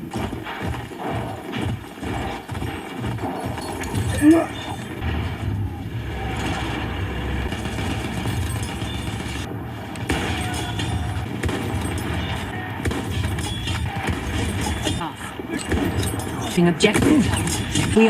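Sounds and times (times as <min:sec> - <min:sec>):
gunfire cracks and impacts: 0:00.0 - 0:18.0
vehicle engine rumble: 0:04.9 - 0:10.1.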